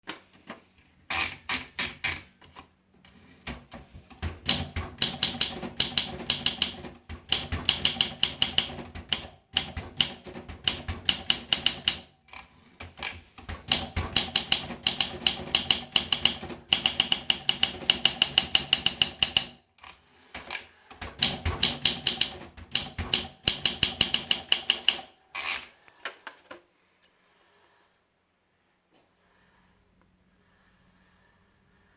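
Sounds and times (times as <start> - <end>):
typewriter keystrokes: 3.5 - 19.6, 20.4 - 25.1.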